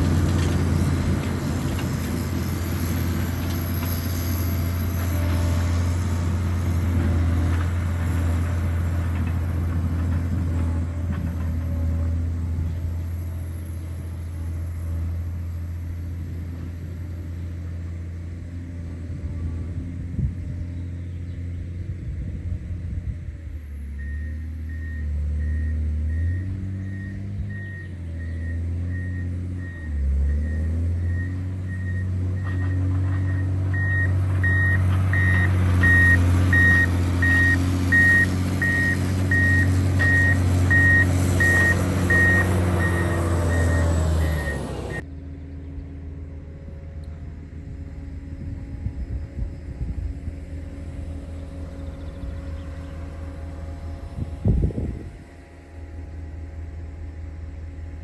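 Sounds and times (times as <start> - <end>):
diesel engine running: 0.0 - 58.0
reversing alarm beeping: 23.8 - 45.0.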